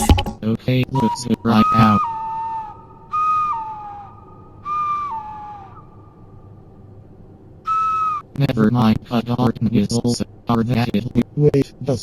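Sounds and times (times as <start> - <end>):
two-note engine whistle: 0.9 - 6.2, 7.6 - 8.3
faint steady tone: 5.6 - 12.0.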